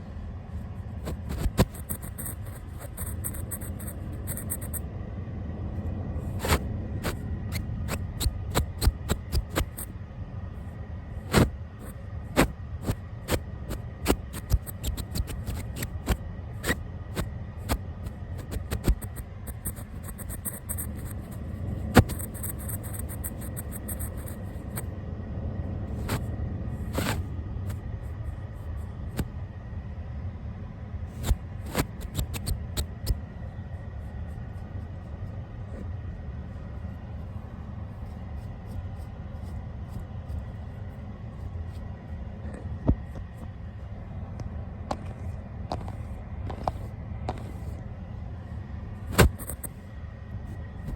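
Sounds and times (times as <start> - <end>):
brush scratching on microphone: 0.9 - 4.8, 6.3 - 9.9, 11.3 - 24.9, 25.9 - 27.8, 31.2 - 33.2, 36.9 - 41.9, 49.1 - 49.8.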